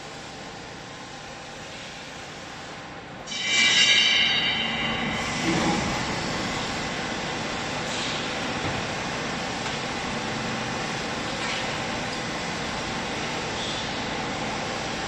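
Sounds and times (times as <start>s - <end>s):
hydraulic baler running: 3.6s - 15.0s.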